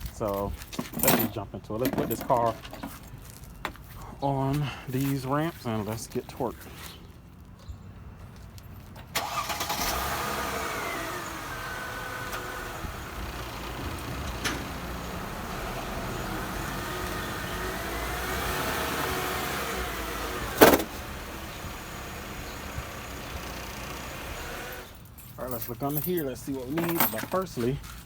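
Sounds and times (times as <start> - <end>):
car engine running: 9.2 - 25.0
loud thump: 20.6 - 20.9.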